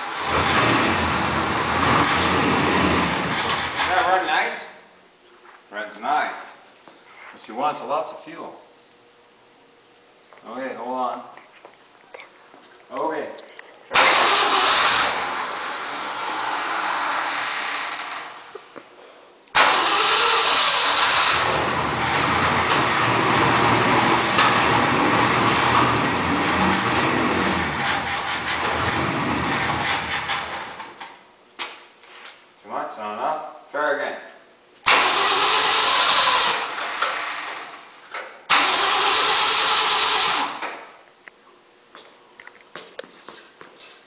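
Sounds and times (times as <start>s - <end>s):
engine starting and running: 0.0s - 4.2s, 13.9s - 18.6s, 19.6s - 31.0s, 34.9s - 41.0s.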